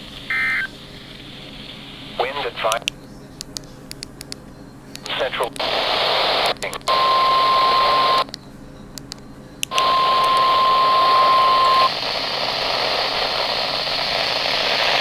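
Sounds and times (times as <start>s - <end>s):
radio static hiss: 0.0s - 2.9s, 5.0s - 8.3s, 9.7s - 15.0s
steady alarm tone: 9.7s - 12.7s.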